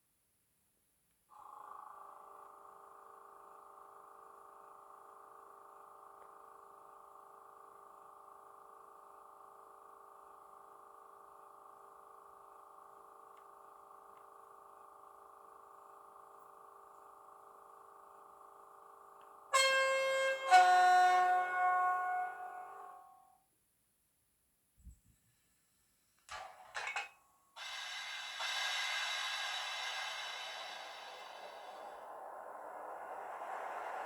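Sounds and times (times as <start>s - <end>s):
two-tone train horn: 19.6s - 23.3s.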